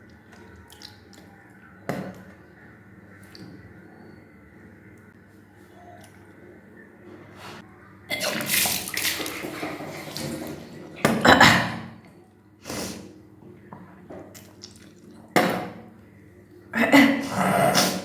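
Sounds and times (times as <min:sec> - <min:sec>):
water splashing down: 0:08.2 - 0:11.2
person vomiting water: 0:11.0 - 0:12.0, 0:16.8 - 0:18.0.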